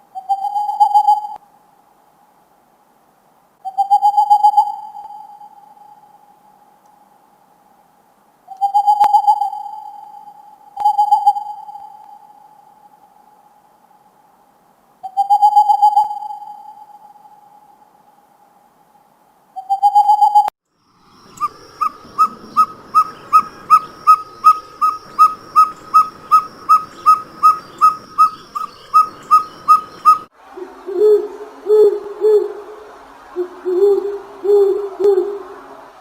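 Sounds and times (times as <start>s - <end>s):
background hiss: 0.0s - 36.0s
owl calls: 21.1s - 32.8s.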